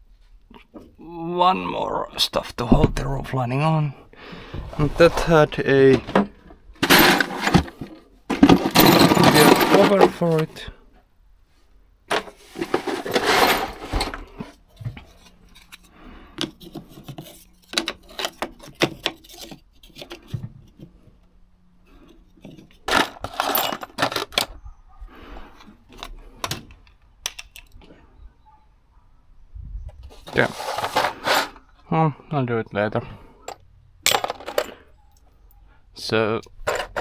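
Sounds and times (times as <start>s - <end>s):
rustling and scraping: 4.2s - 27.0s, 29.9s - 31.8s, 36.6s - 37.0s
small metal parts clinking: 6.8s - 10.4s, 12.1s - 14.0s, 21.9s - 24.6s, 33.4s - 35.3s, 36.5s - 37.0s.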